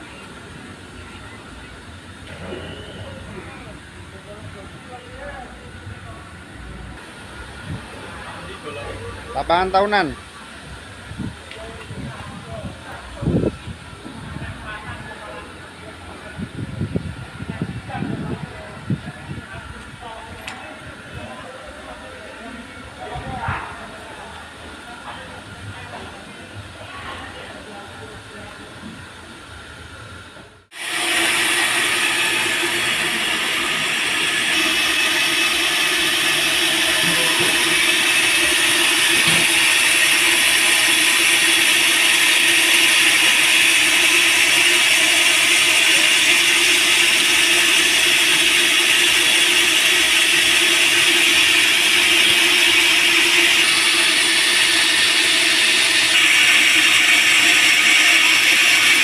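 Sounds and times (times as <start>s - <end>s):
band saw cutting wood: 30.7s - 59.0s.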